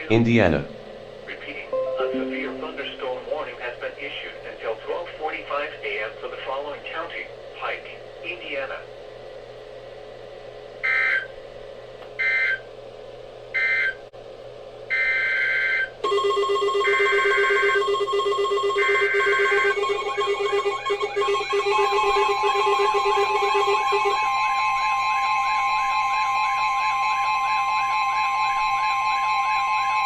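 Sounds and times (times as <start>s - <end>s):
steady alert tones: 1.8s - 3.4s.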